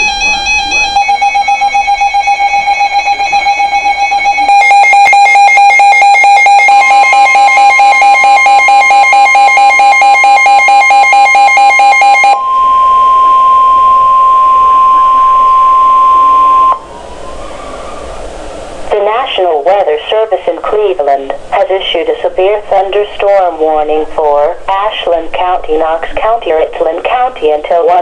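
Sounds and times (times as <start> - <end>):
steady alert tone: 0.0 - 7.2
buzzy electronic alert tones: 0.0 - 16.8.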